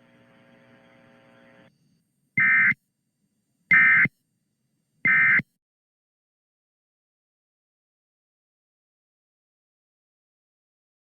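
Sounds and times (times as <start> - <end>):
data tone bursts: 2.4 - 2.8, 5.1 - 5.4.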